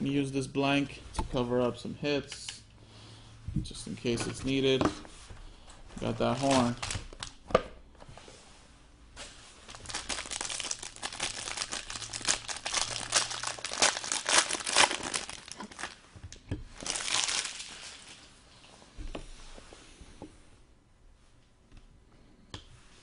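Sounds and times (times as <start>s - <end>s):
plastic wrapper crinkling and tearing: 6.2s - 7.4s, 9.7s - 16.0s, 16.8s - 18.3s.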